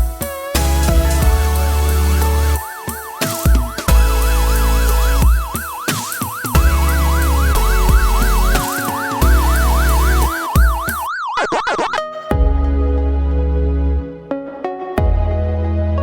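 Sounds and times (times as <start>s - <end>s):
electronic music with heavy bass: 0.0s - 14.3s, 15.0s - 16.0s
siren-like warbling tone: 3.7s - 12.2s.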